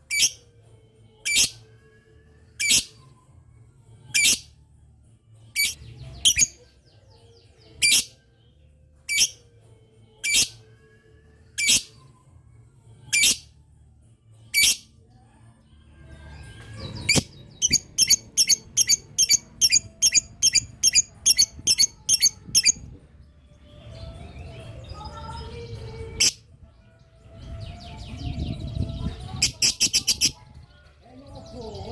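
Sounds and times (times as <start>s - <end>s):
lovebird shrill calls: 17.1s - 22.8s.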